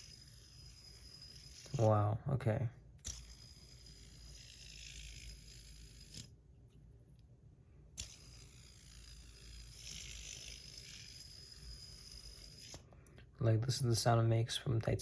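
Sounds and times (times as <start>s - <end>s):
fidget spinner whirring: 0.0s - 2.0s, 3.0s - 6.4s, 7.9s - 13.0s
fidget spinner clicks: 8.0s - 12.8s.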